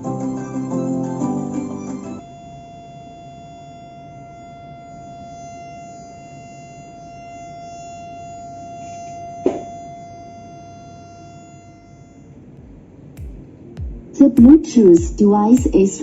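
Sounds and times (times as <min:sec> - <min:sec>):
speaker buzzing tone: 0:00.0 - 0:16.0
short thump: 0:09.4 - 0:09.7.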